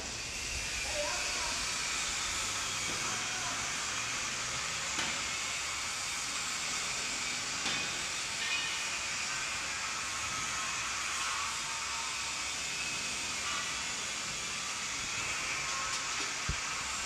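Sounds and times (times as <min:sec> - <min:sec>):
steady hiss: 0:00.0 - 0:17.0.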